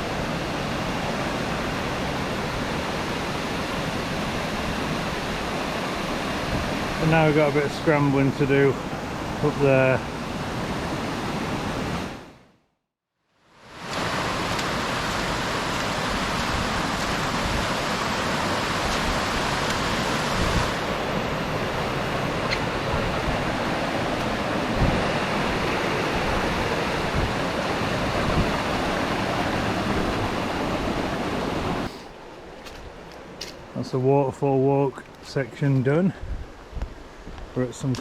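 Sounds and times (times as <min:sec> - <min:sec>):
waterfall rushing: 0:00.0 - 0:10.0, 0:13.7 - 0:32.0
wind thumps on microphone: 0:15.9 - 0:29.0, 0:36.2 - 0:37.6.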